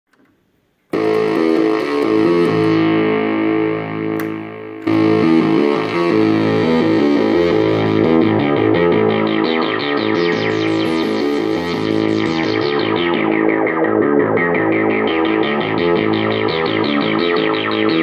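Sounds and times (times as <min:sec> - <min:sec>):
buzzy synthesizer line: 0:00.9 - 0:18.0.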